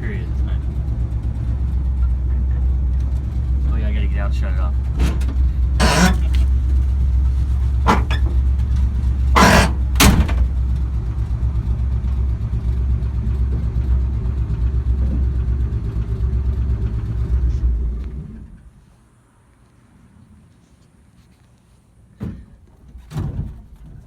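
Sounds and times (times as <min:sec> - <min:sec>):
car engine idling: 0:00.0 - 0:18.7
loud knocks: 0:05.0 - 0:06.5, 0:07.8 - 0:08.5, 0:09.3 - 0:10.6.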